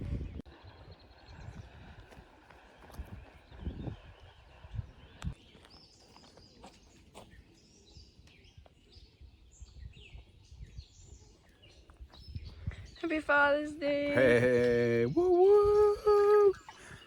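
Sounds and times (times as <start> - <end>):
birds chirping: 2.6 - 17.0.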